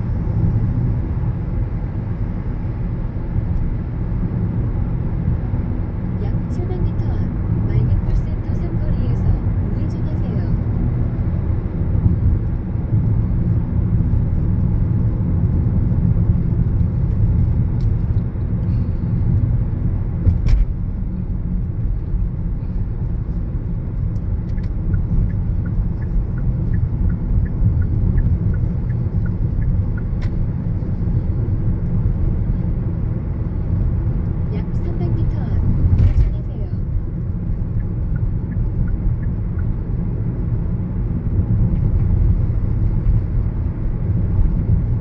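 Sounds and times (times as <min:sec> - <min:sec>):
car road noise rumble: 0:00.0 - 0:45.0.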